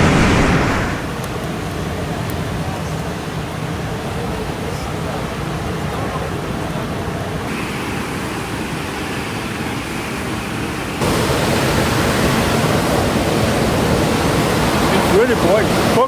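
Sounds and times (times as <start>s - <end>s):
stream water rushing: 0.0s - 1.3s, 7.0s - 16.0s.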